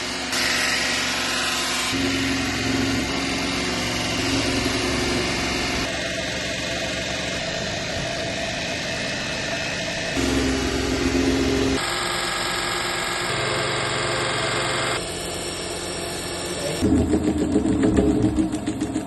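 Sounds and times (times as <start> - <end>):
electric power tool motor running: 0.0 - 7.9, 10.1 - 16.9.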